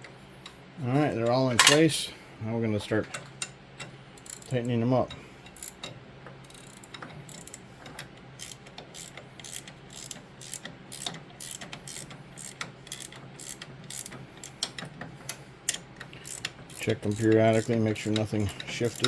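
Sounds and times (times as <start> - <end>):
ratchet wrench clicking: 4.2 - 4.6, 5.5 - 7.6, 8.4 - 14.8, 15.7 - 19.0.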